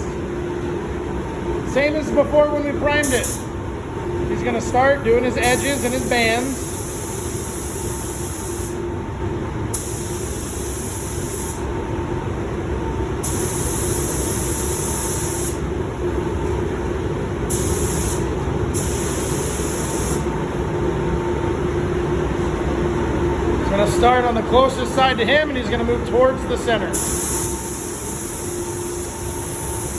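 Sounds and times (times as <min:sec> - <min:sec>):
steady hum: 0:00.0 - 0:29.9
spray gun hissing: 0:05.4 - 0:08.8, 0:09.7 - 0:11.6, 0:13.2 - 0:15.6, 0:17.5 - 0:20.2, 0:27.0 - 0:29.9.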